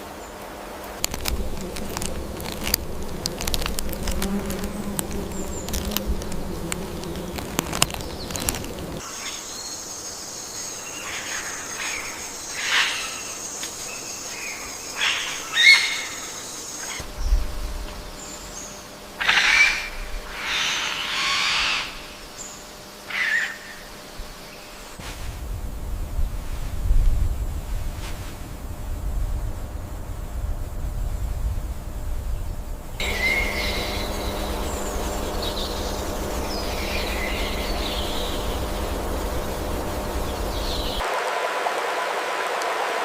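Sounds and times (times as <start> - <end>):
high insect drone: 0.0 - 43.0
animal calls: 19.2 - 22.2, 33.0 - 41.0
low rumble: 25.3 - 41.0.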